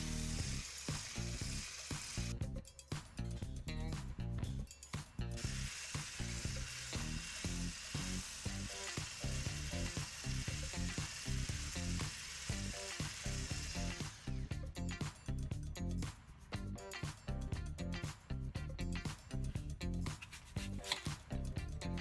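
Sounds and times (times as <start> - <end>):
food sizzling in a pan: 0.0 - 2.3, 5.4 - 14.0
background music: 0.0 - 22.0.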